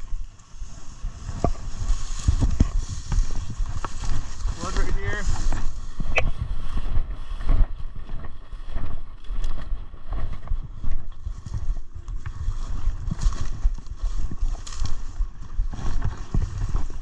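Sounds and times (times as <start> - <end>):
footsteps in brush: 0.0 - 17.0
microphone handling: 0.0 - 17.0
wind rumble: 0.0 - 17.0.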